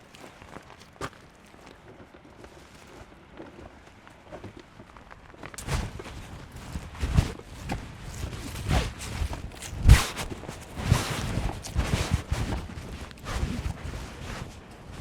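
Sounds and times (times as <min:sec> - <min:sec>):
footsteps on forest floor: 0:00.0 - 0:03.0.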